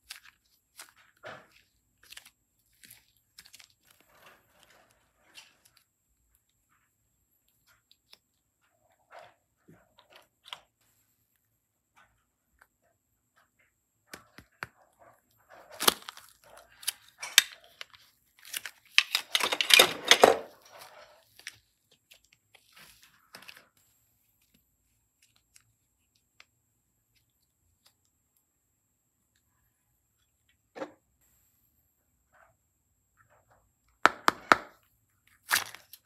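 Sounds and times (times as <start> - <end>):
crackling crinkling: 0.0 - 10.9, 14.1 - 23.8.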